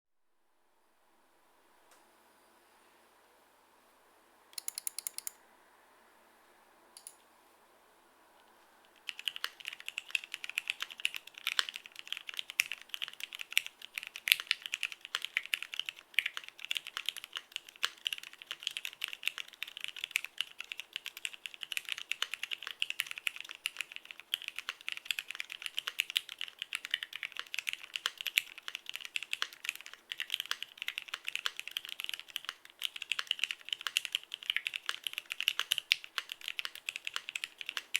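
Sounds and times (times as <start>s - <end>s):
mechanical keyboard typing: 4.6s - 5.4s, 8.9s - 37.9s.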